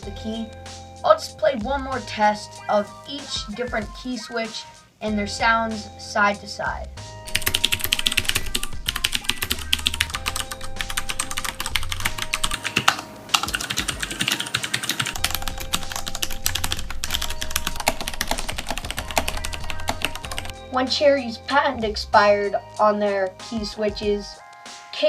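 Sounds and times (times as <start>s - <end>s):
faint background music: 0.0s - 25.0s
fast typing on mechanical keyboards: 7.3s - 20.5s.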